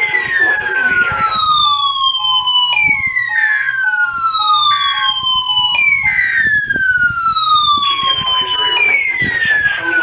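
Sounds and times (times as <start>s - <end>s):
siren-like falling tone: 0.0s - 10.0s.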